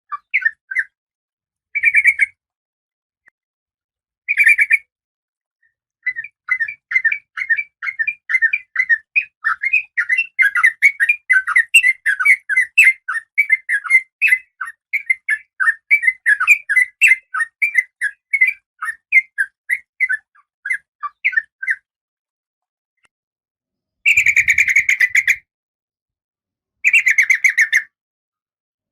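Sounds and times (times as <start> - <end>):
bird chirping rapidly: 0.1 - 1.0, 1.8 - 2.4, 4.3 - 4.9, 6.0 - 21.9, 24.0 - 25.5, 26.8 - 27.9.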